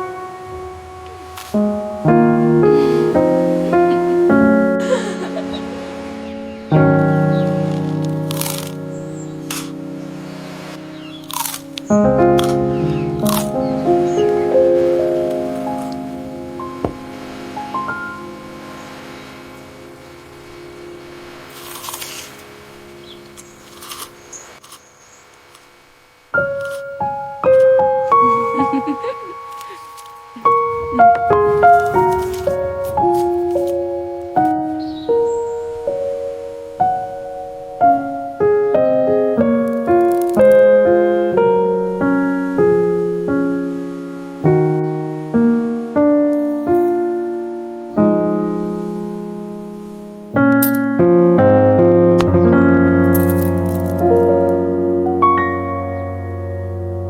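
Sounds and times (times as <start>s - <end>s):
gentle piano music: 0.0s - 25.3s, 26.2s - 57.0s
soft rustles: 21.4s - 22.6s, 26.4s - 34.6s.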